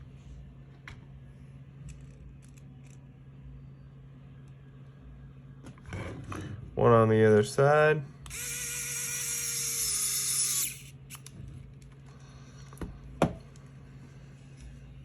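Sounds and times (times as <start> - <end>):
electric screwdriver whining: 8.3 - 11.2.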